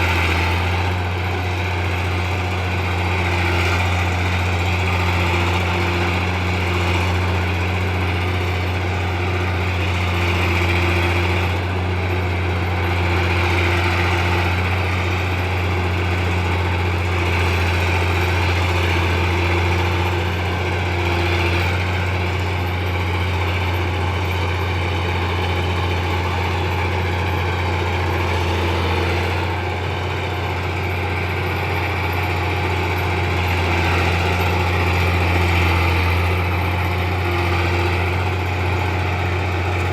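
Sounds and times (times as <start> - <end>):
bulldozer diesel engine drone: 0.0 - 39.9.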